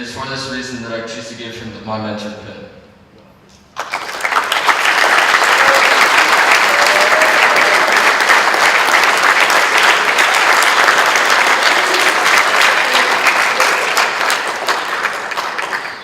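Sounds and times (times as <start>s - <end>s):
audience applauding: 3.8s - 16.0s.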